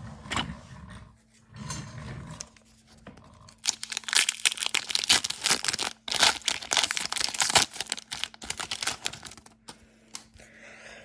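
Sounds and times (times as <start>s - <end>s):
foil pack tearing and crinkling: 3.6s - 10.3s.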